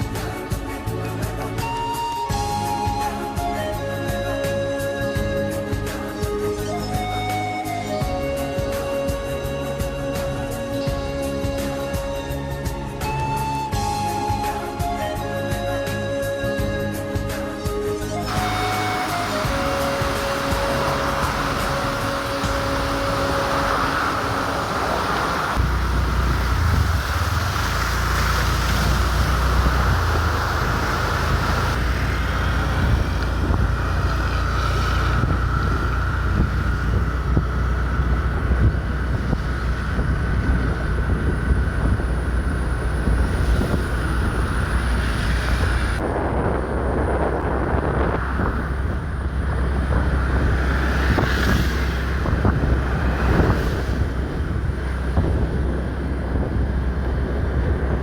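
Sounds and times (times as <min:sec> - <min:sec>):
low noisy rumble: 0:18.2 - 0:58.0
high hiss: 0:18.3 - 0:37.0
wind buffeting microphone: 0:18.3 - 0:58.0.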